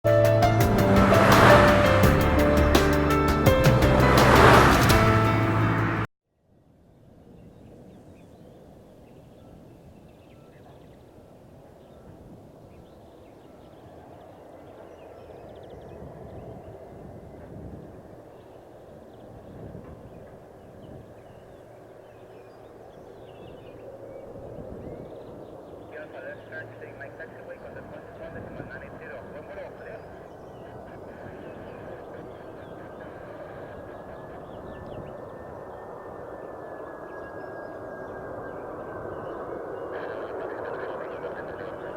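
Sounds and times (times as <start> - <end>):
small birds chirping: 18.4 - 41.9
jet engines rumbling and whining: 23.7 - 41.9.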